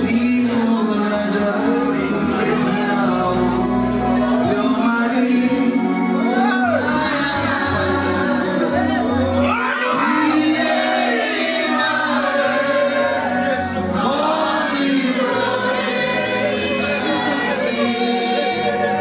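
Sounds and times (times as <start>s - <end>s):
choir singing: 0.0s - 19.0s.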